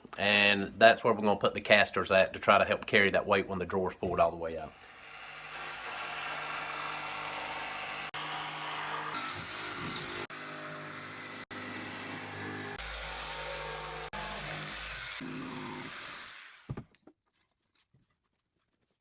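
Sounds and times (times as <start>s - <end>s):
power tool cutting wood: 4.7s - 16.8s.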